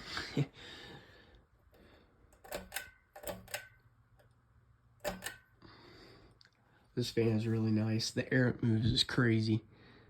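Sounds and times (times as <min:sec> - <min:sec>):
ceiling fan humming: 0:00.0 - 0:10.0.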